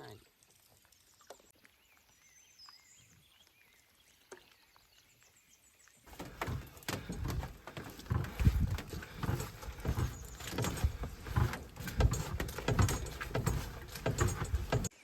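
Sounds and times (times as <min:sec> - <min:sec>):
faint birdsong: 0:01.0 - 0:15.0
low thumps: 0:06.1 - 0:14.9
loud rustling: 0:06.1 - 0:15.0.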